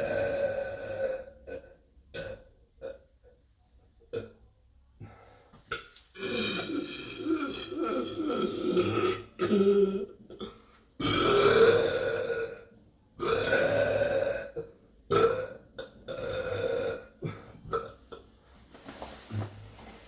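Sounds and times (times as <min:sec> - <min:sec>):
person burping: 0:00.0 - 0:03.0, 0:05.7 - 0:18.3.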